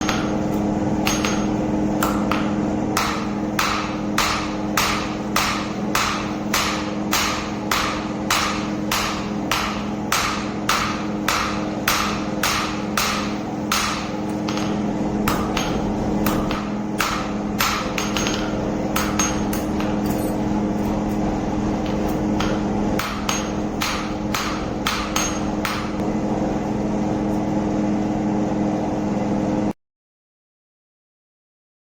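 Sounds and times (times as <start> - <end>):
hammer striking metal: 0.0 - 21.2, 21.8 - 26.1
machine hum: 0.0 - 29.8.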